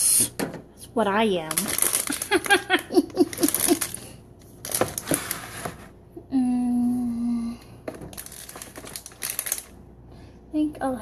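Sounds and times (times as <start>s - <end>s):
woman humming: 6.2s - 7.6s.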